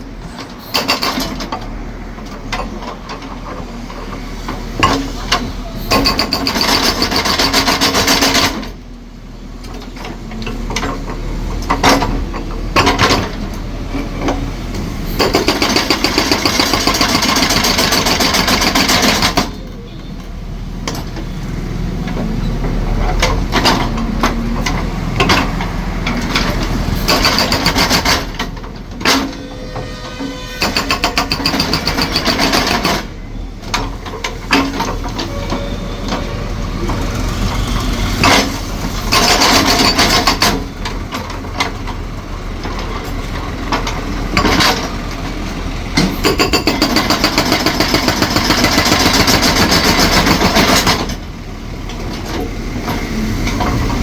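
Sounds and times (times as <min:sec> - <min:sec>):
concrete breaker hammering: 0:15.1 - 0:19.6, 0:27.0 - 0:28.4, 0:30.6 - 0:33.1, 0:46.0 - 0:51.1
scattered knocks: 0:22.2 - 0:33.1.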